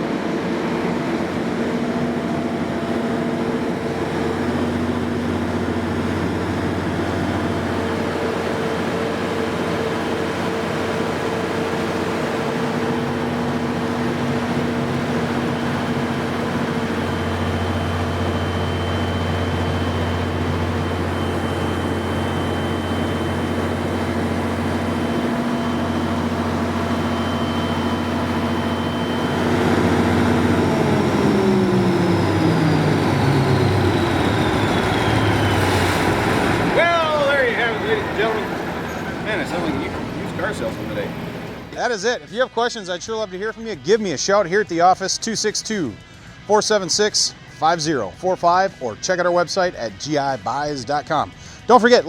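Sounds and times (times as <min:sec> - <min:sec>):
diesel generator engine running: 0:00.0 - 0:52.0.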